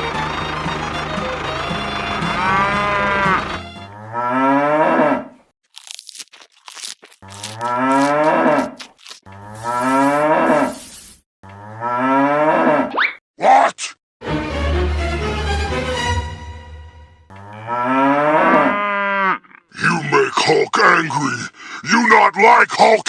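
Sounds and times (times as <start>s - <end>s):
short crackles: 5.7s - 11.2s
background music: 14.2s - 17.2s
cow mooing: 17.3s - 19.4s.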